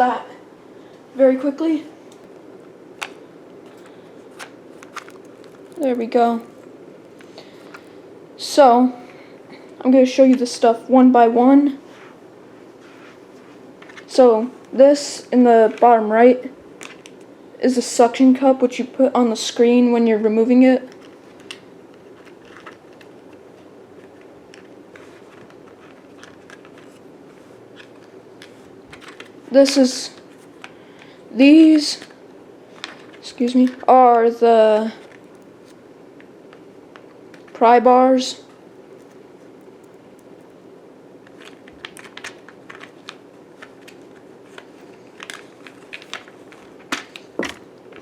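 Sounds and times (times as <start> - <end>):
low background hum: 0.0 - 48.0
plastic and metal parts clicking: 3.0 - 5.9
plastic clicks and crinkles: 3.0 - 7.9, 16.8 - 17.3, 20.8 - 29.4, 32.0 - 33.9, 35.0 - 37.6, 38.5 - 40.6, 41.2 - 48.0.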